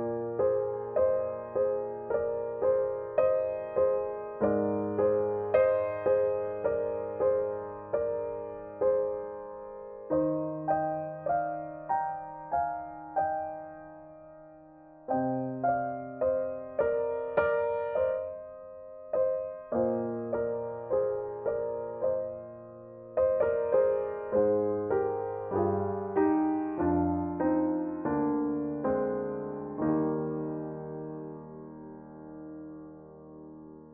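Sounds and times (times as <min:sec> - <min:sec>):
slow solo piano: 0:00.0 - 0:33.9.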